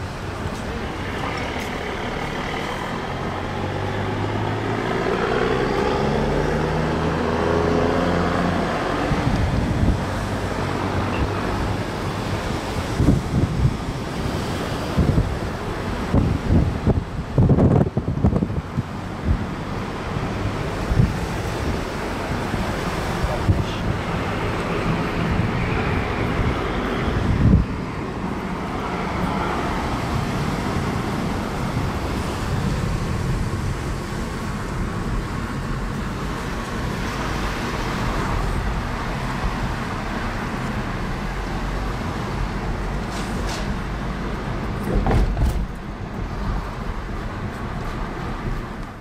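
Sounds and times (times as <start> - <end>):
vehicle and road rumble: 0.0 - 49.0
vehicle thumps and bumps: 44.8 - 46.0.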